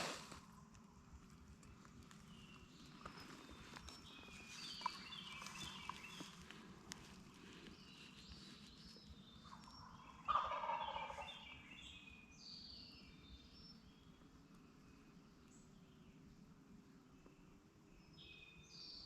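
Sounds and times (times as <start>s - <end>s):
songbirds chirping: 0.0s - 19.0s
wild turkey gobbling: 9.9s - 11.4s.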